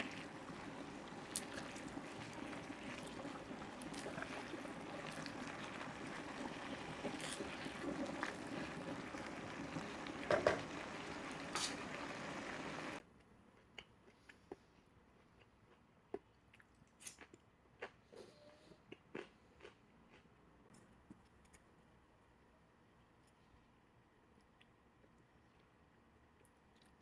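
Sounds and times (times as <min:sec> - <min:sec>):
food bubbling and sizzling: 0:00.0 - 0:13.0.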